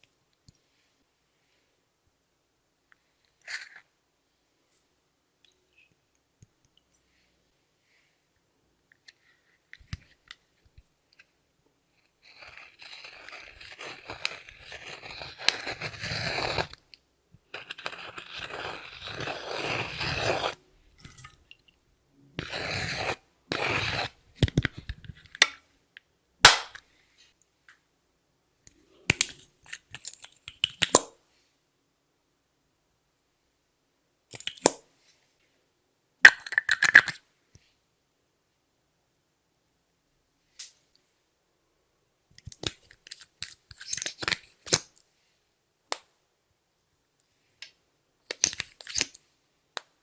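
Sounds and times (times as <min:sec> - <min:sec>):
crunchy slime scraping: 0:12.2 - 0:16.8, 0:17.5 - 0:20.6, 0:22.4 - 0:24.2.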